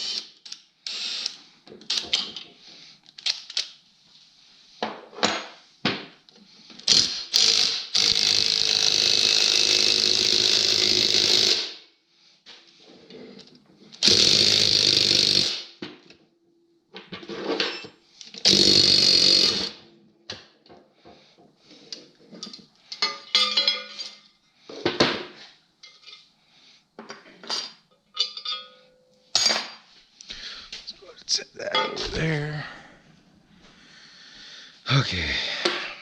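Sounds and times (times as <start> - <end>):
tools and metal parts clinking: 17.0 - 18.4, 22.3 - 24.4, 25.8 - 26.3, 27.0 - 29.9.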